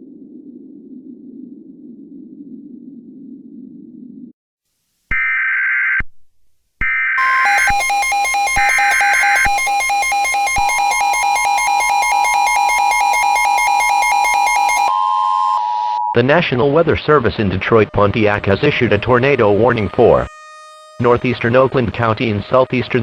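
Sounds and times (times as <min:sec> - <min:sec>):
screechy digital data tones: 0:07.2 - 0:15.7
pulsing electronic alert tone: 0:07.2 - 0:16.2
two-tone attention signal: 0:07.2 - 0:16.2.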